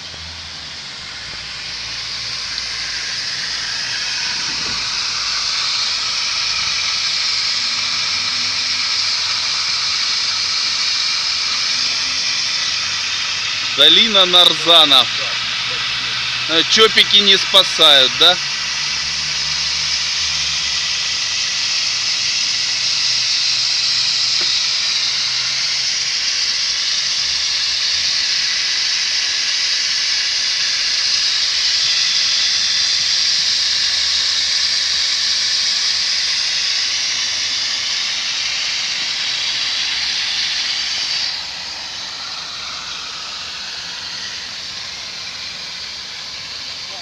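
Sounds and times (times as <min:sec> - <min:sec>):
pressurized jet hissing from pipe: 0:00.0 - 0:47.0.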